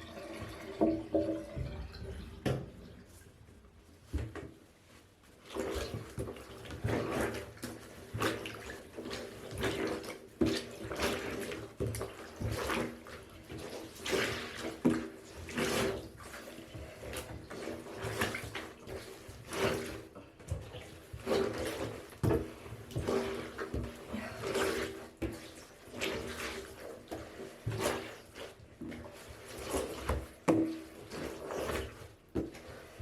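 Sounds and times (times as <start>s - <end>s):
water splashing and sloshing: 0.0s - 33.0s
wet fabric wrung out by hand: 20.7s - 33.0s.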